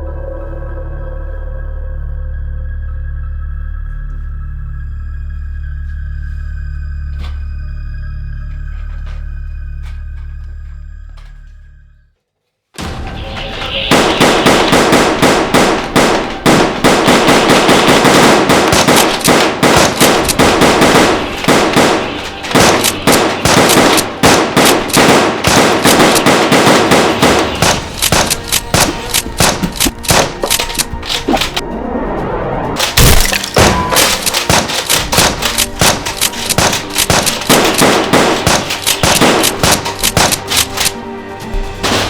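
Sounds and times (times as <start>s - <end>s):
background music: 0.0s - 12.2s, 12.8s - 42.0s
rapid gunshots: 12.8s - 31.6s, 32.8s - 41.0s.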